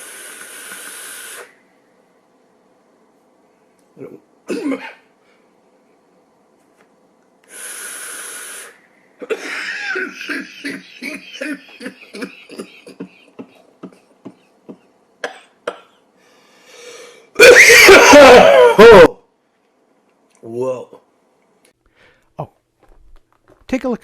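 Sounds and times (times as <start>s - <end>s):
breathy hiss: 0.0s - 1.7s, 7.4s - 14.0s, 15.7s - 17.4s
person coughing: 4.5s - 5.1s, 9.2s - 16.0s, 17.4s - 19.1s.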